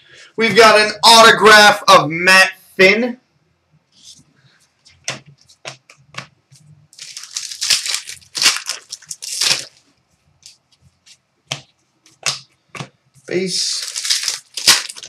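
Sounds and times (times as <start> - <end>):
plastic wrapper crinkling and tearing: 6.9 - 10.6, 13.6 - 15.0.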